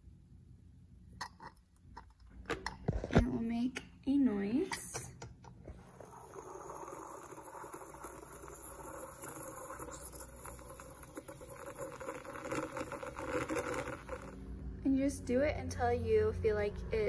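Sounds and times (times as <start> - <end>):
steam wand frothing milk: 5.7 - 14.4.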